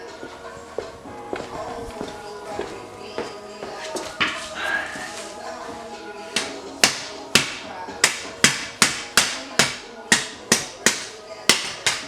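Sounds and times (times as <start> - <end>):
hammer blows on metal: 0.0 - 12.0.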